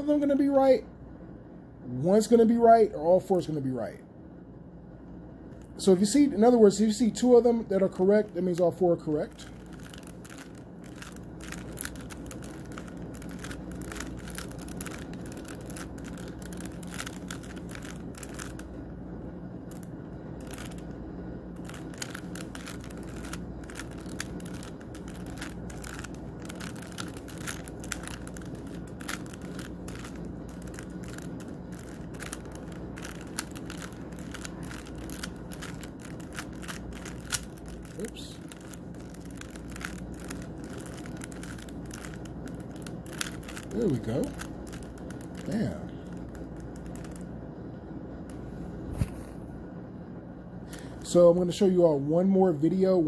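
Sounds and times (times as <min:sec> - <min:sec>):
low steady hum: 0:00.0 - 0:53.0
puzzle cube plastic clicks: 0:09.4 - 0:18.7, 0:19.7 - 0:20.9, 0:21.6 - 0:47.2.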